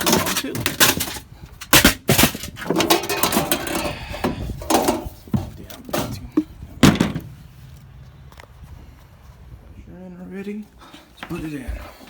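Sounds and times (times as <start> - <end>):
tools knocking and clattering: 0.0 - 7.3.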